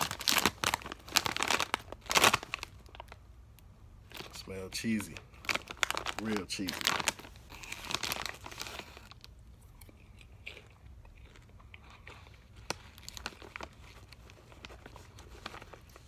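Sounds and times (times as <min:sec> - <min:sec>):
person chewing crunchy chips: 0:05.1 - 0:16.0.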